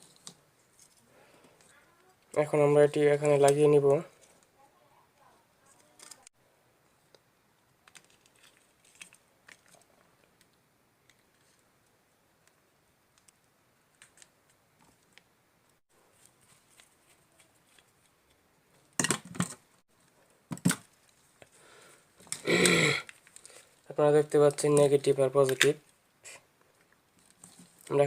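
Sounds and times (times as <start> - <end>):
small parts clicking and rustling: 0.0 - 2.4, 5.6 - 6.3, 7.8 - 11.7, 16.1 - 26.0, 26.6 - 28.0.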